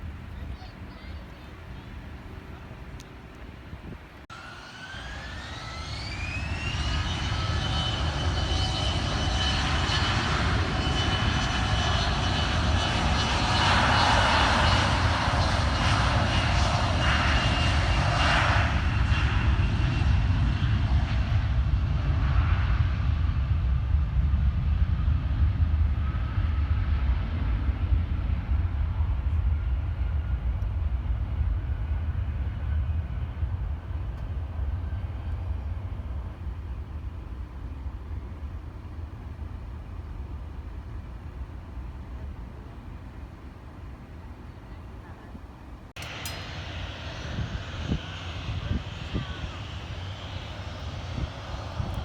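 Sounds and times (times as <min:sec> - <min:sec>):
jet engines spooling up: 0:04.3 - 0:22.6, 0:46.0 - 0:52.0.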